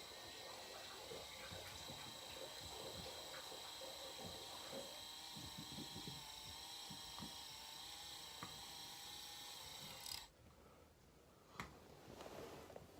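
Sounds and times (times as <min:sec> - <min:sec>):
small electric motor whining: 0:00.0 - 0:10.3.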